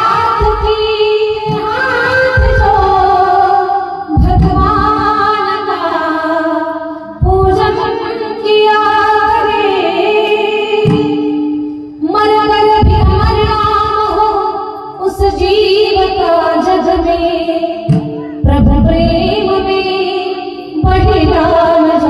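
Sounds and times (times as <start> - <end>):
woman singing devotional song: 0.0 - 22.0.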